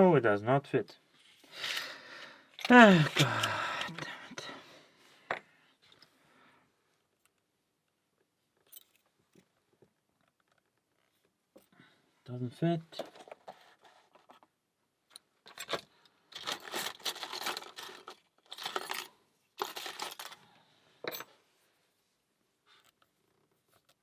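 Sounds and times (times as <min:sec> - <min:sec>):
metal lockpicking tools clinking: 0:15.5 - 0:20.4.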